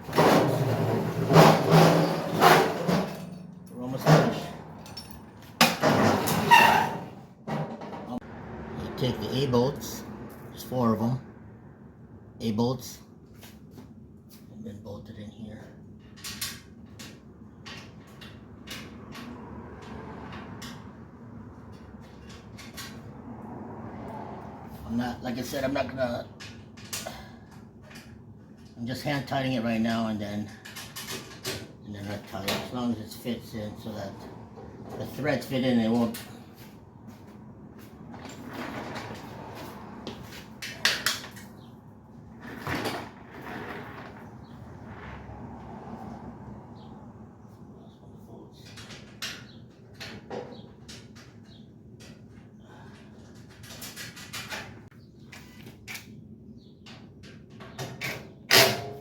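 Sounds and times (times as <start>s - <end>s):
metal grill parts rubbing and clattering: 0.0s - 8.1s, 42.3s - 45.2s.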